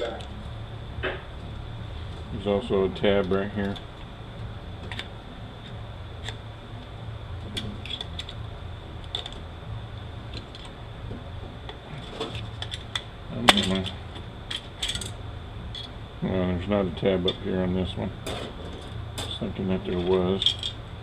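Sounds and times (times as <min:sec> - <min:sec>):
steady low hum: 0:00.0 - 0:21.0
metal parts clinking: 0:12.0 - 0:15.9, 0:18.2 - 0:20.8.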